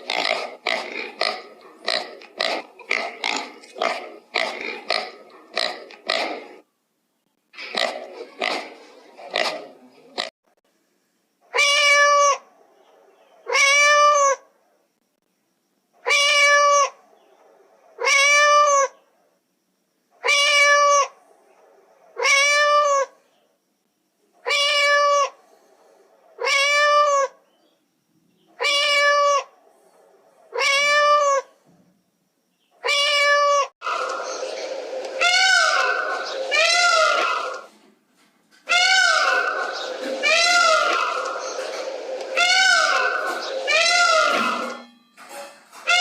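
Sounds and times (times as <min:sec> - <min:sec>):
cat meowing: 0:11.5 - 0:12.4, 0:13.5 - 0:14.4, 0:16.0 - 0:17.0, 0:18.0 - 0:18.9, 0:20.2 - 0:21.2, 0:22.2 - 0:23.1, 0:24.4 - 0:25.4, 0:26.4 - 0:27.4, 0:28.6 - 0:29.5, 0:30.5 - 0:31.5, 0:32.8 - 0:33.7, 0:38.7 - 0:39.6.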